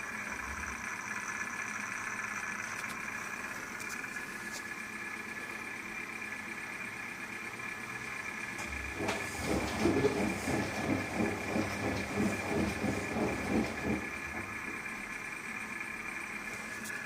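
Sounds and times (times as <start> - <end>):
washing machine hum and whine: 0.0 - 17.0.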